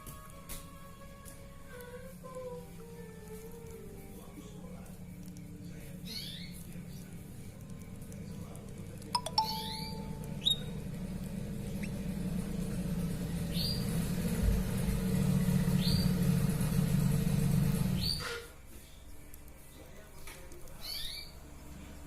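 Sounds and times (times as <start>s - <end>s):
canaries chirping: 5.8s - 7.2s, 9.4s - 14.4s, 15.6s - 16.5s, 17.8s - 18.3s, 20.8s - 21.4s.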